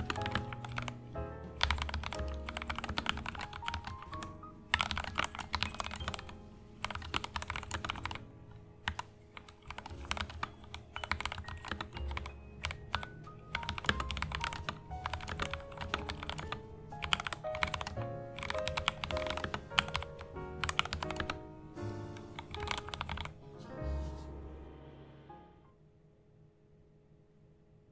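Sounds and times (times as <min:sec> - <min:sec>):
typing on mechanical keyboard: 0:00.0 - 0:08.2, 0:08.8 - 0:21.4, 0:22.2 - 0:23.4
jazz music: 0:00.0 - 0:25.8.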